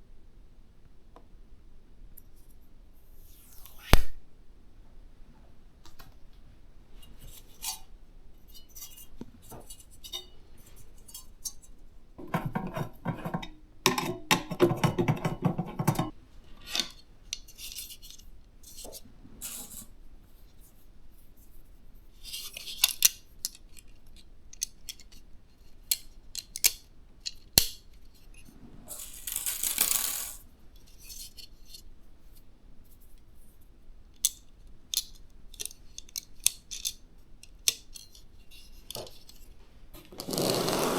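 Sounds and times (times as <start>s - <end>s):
parts rattling and scraping: 7.0s - 19.9s
clicks and taps of parts: 25.9s - 27.8s, 34.2s - 39.4s.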